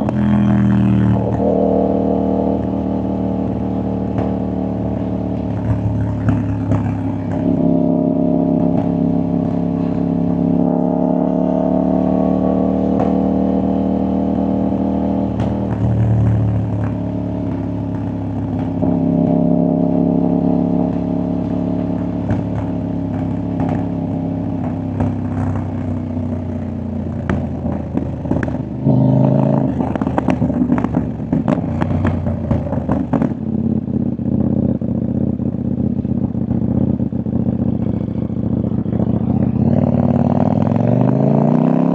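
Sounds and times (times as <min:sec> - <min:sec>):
motorcycle engine riding: 0:00.0 - 0:41.9
exhaust pops and crackles: 0:04.0 - 0:07.6, 0:08.5 - 0:10.6, 0:15.3 - 0:28.8, 0:29.4 - 0:37.6.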